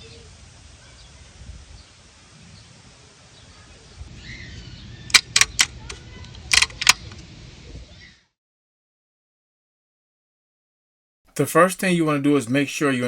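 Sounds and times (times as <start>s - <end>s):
faint outdoor background: 0.0s - 8.4s, 11.3s - 13.0s.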